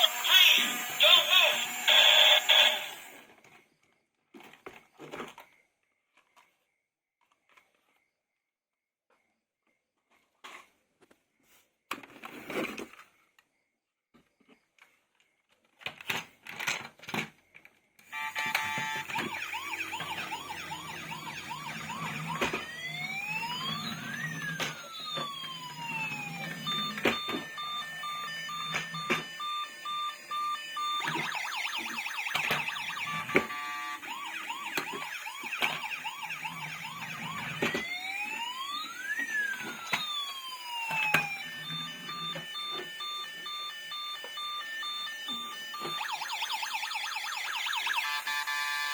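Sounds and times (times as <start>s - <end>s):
toy electronic siren: 0.0s - 3.2s, 18.1s - 48.9s.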